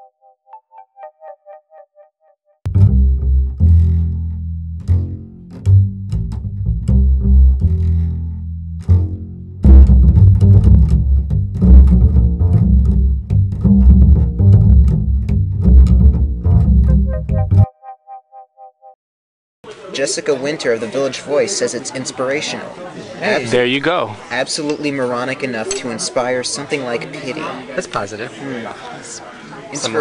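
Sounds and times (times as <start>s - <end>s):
busy musical accompaniment: 2.7s - 17.7s
plucked double bass line: 2.7s - 17.7s.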